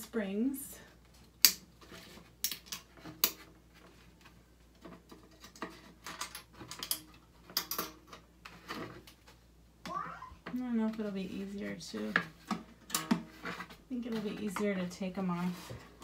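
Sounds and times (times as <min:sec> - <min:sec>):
metallic clicks and rattles: 0:04.8 - 0:08.2.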